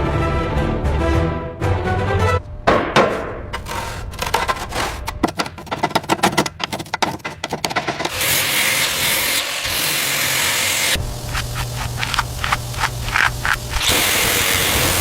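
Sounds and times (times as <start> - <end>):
rapid scraping and rubbing: 3.1 - 8.2, 11.0 - 15.0
spraying hiss: 10.9 - 15.0.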